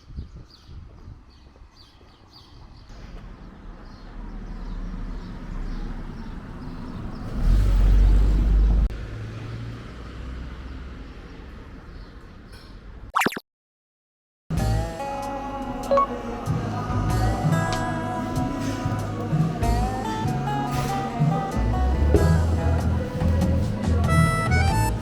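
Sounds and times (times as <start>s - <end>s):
vehicle engine rumble passing: 2.7s - 12.0s.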